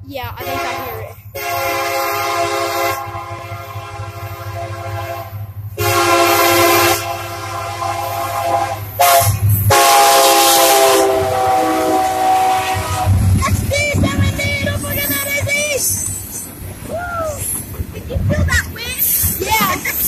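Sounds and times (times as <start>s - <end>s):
diesel locomotives rumbling: 0.0s - 20.0s
train air horn blasts: 0.4s - 13.4s.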